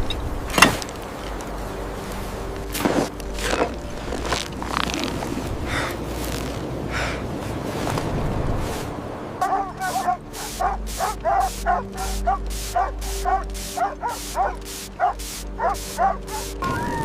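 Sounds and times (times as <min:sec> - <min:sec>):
low steady drone: 0:09.0 - 0:17.0
dogs yipping and barking: 0:09.4 - 0:16.7.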